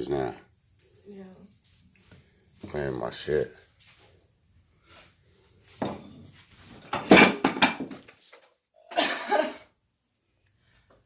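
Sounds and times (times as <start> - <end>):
household objects clattering: 5.8 - 8.5.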